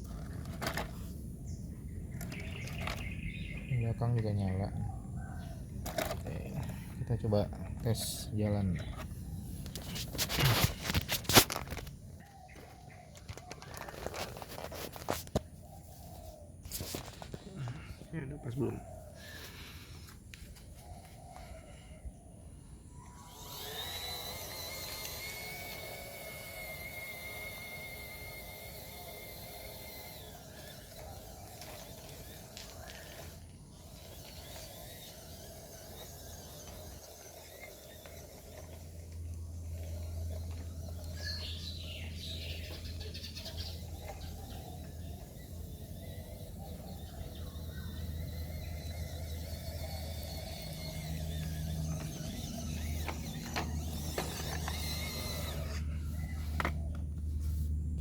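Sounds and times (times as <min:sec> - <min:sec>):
small electric motor whining: 0:00.0 - 0:58.0.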